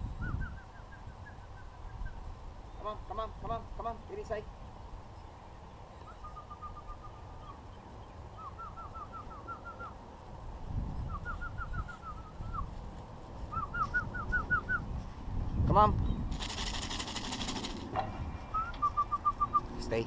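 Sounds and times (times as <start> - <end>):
person whistling short notes: 18.5 - 19.6.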